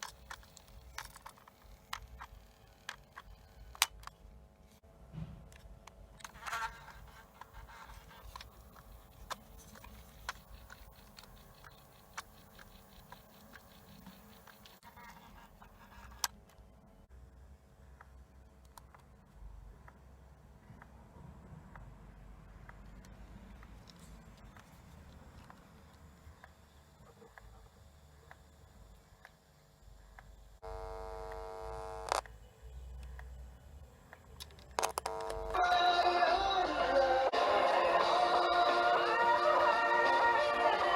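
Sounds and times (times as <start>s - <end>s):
cassette mechanism running: 0.0s - 4.2s, 6.2s - 14.9s
steady multi-tone whine: 0.0s - 20.7s, 22.8s - 36.7s
faint steady hum: 0.0s - 40.9s
faint regular clicks: 5.5s - 14.8s, 18.0s - 21.0s, 28.2s - 32.4s.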